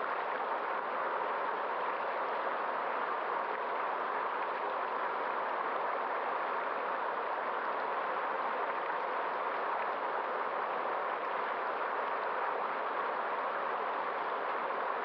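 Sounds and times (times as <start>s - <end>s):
stream of running water: 0.0s - 15.0s.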